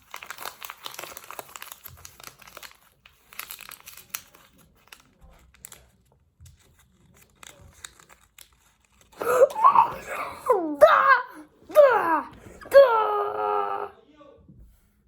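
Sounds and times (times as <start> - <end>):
plastic packet crinkling and tearing: 0.0 - 9.8.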